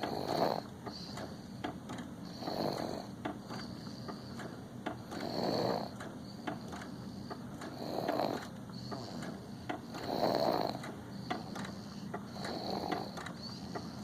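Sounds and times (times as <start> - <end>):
baby snoring: 0.0 - 1.2, 2.2 - 3.9, 5.0 - 6.0, 7.7 - 14.0.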